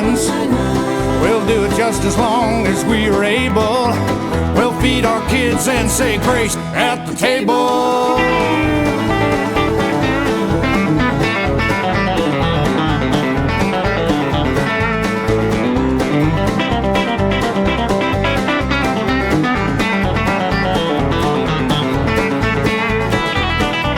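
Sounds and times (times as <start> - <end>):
country guitar strumming and picking: 0.0 - 23.9
steady bass beat: 8.3 - 23.9.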